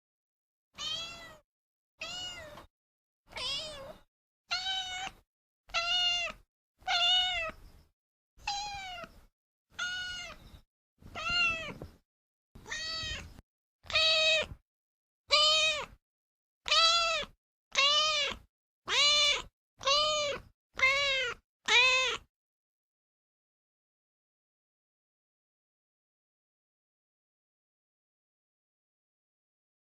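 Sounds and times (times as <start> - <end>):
cat meowing: 0.8 - 1.4, 2.0 - 2.7, 3.3 - 7.6, 8.4 - 10.4, 11.1 - 11.8, 12.6 - 14.6, 15.3 - 16.0, 16.7 - 22.3.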